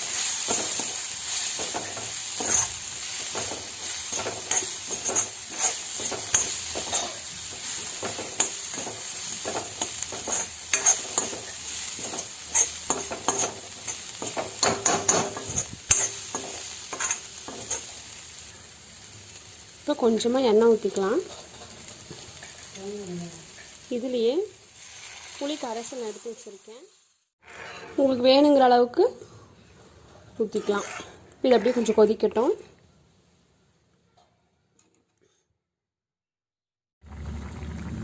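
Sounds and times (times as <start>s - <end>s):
food sizzling in oil: 0.0s - 27.4s
utensil scraping pan: 1.5s - 17.9s, 30.4s - 32.2s.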